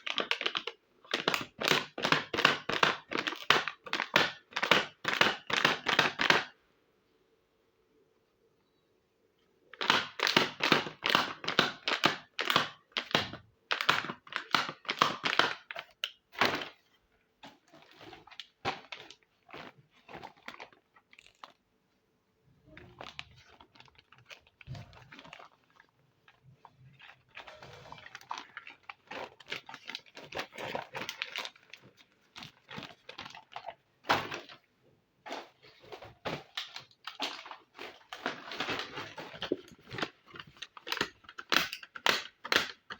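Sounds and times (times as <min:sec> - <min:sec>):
packaging crinkling: 0:00.0 - 0:06.5, 0:09.7 - 0:21.6, 0:22.7 - 0:34.7, 0:35.5 - 0:42.9
plastic toy pieces clicking: 0:40.8 - 0:42.9.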